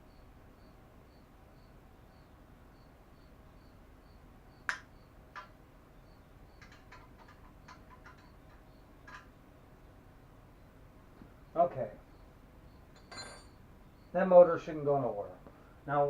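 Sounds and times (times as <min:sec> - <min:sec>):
cricket chirping: 0:00.0 - 0:16.0
hand tools clicking and tapping: 0:05.4 - 0:05.6, 0:06.6 - 0:09.4.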